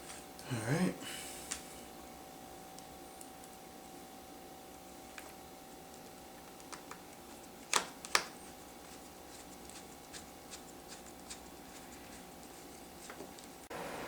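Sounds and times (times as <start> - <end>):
faint steady hum: 0.0 - 14.0
plastic clicks and snaps: 7.7 - 8.3.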